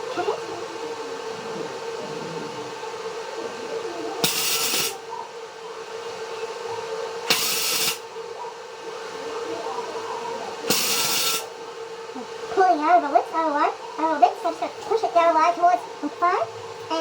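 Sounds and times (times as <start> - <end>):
steady hum: 0.0 - 17.0
welder hissing: 4.2 - 5.1, 7.2 - 8.1, 10.6 - 11.6.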